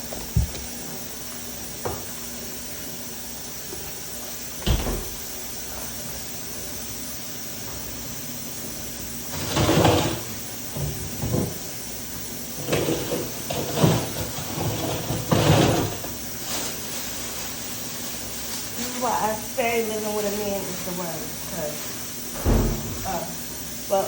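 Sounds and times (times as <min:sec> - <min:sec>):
items sliding and bumping in refrigerator: 0:00.0 - 0:00.8, 0:09.3 - 0:11.6, 0:12.6 - 0:17.3.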